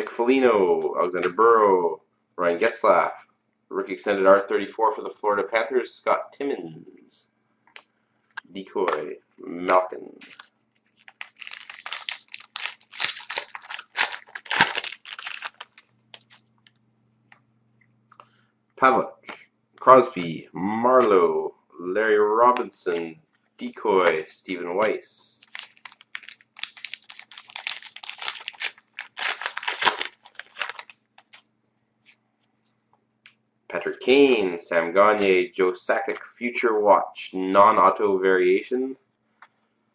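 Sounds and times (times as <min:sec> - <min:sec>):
cards clicking and rustling: 0:10.2 - 0:16.8, 0:25.4 - 0:31.4
wrapper tearing and crinkling: 0:10.2 - 0:16.8, 0:25.4 - 0:31.4.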